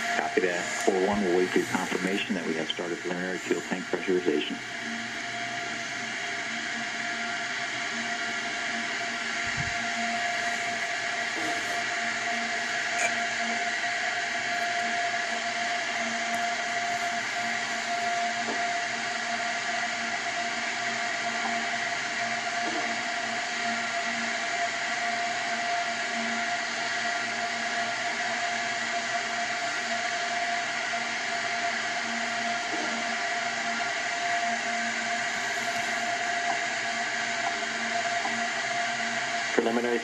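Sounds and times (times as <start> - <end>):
steady hiss: 0.0 - 4.6
constant hum tones: 0.0 - 40.0.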